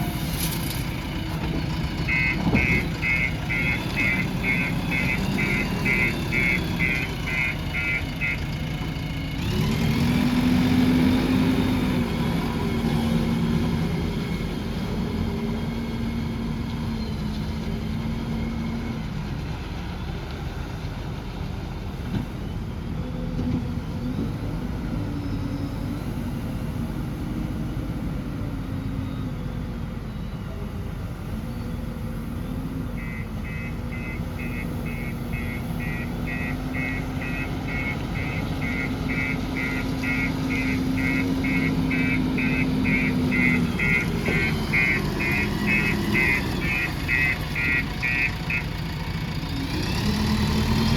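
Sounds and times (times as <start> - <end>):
diesel engine working: 0.0 - 50.9
reversing beeper: 2.0 - 8.4, 32.4 - 48.7.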